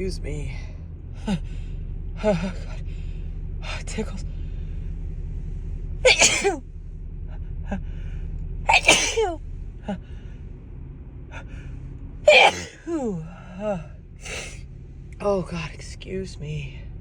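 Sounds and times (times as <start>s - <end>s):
steady low hum: 0.0s - 17.0s
woman sneezing: 6.1s - 6.6s, 8.7s - 9.4s, 12.3s - 12.8s, 14.3s - 14.5s.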